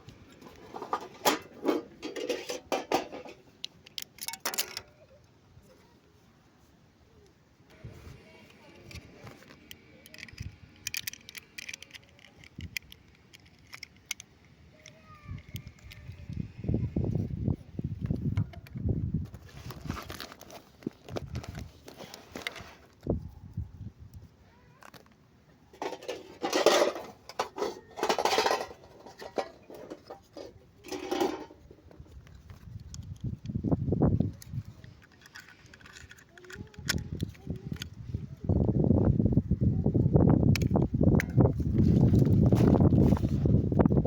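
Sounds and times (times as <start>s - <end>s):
plastic toy pieces clinking: 0.3s - 5.1s, 8.7s - 16.4s, 25.8s - 33.6s, 34.3s - 37.9s
plastic toy pieces clicking: 3.6s - 5.0s, 9.7s - 16.4s, 34.4s - 37.9s
packaging rustling: 19.4s - 22.9s.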